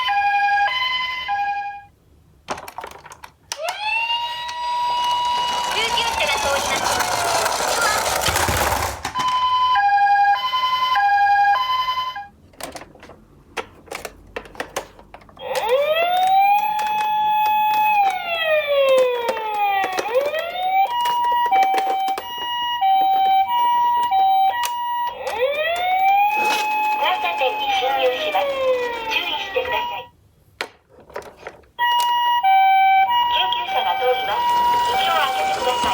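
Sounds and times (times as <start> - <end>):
two-tone siren: 0.0 - 1.9, 3.6 - 8.1, 9.2 - 12.3, 15.4 - 30.1, 31.8 - 35.9
wailing siren: 3.5 - 8.2, 9.2 - 12.3, 15.4 - 30.1, 31.8 - 35.9.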